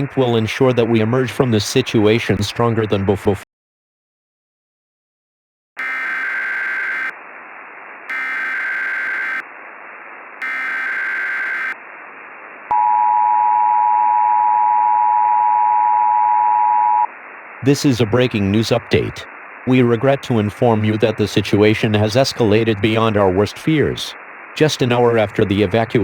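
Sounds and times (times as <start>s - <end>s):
screeching digital data bursts: 5.8s - 7.2s, 8.1s - 9.5s, 10.4s - 11.8s
static hiss: 5.8s - 12.7s, 17.1s - 26.0s.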